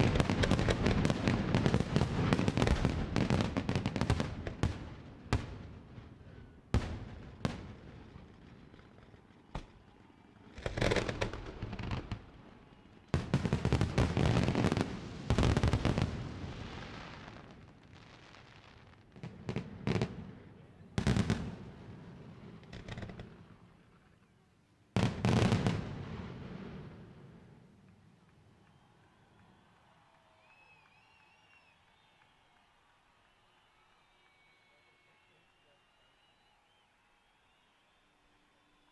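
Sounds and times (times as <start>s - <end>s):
fireworks bursting with sharp bangs: 0.0s - 24.0s, 25.0s - 28.8s.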